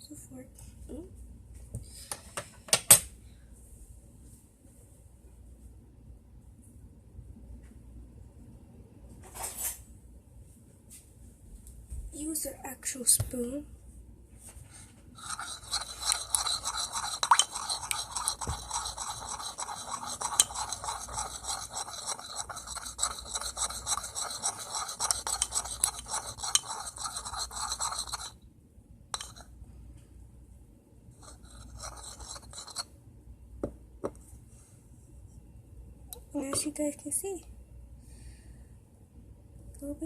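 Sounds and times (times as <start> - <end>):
utensil scraping a bowl: 15.2 - 28.4, 29.2 - 29.4, 31.2 - 32.9.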